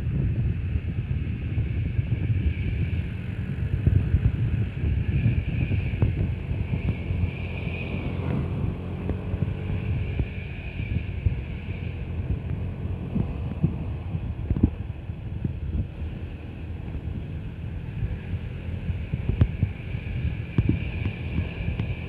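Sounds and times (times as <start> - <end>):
road traffic rumble: 0.0 - 22.0
wind buffeting microphone: 0.0 - 22.0.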